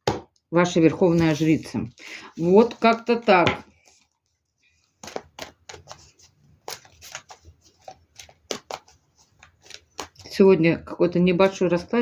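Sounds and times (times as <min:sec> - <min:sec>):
cards being shuffled: 0:01.1 - 0:04.2, 0:05.0 - 0:10.4.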